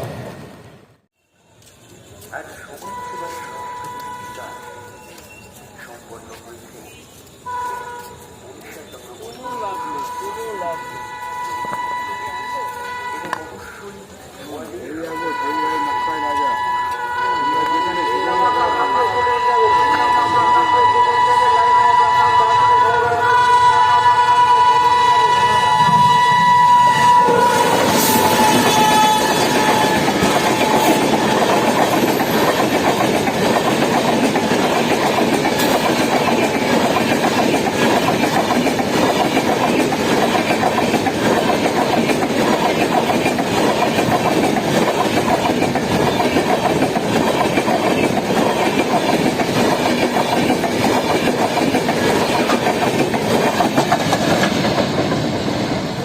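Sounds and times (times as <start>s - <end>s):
train horn: 2.8s - 5.3s, 7.4s - 8.3s, 9.1s - 13.9s, 14.8s - 32.4s
train wheels rattling over joints: 25.4s - 56.0s.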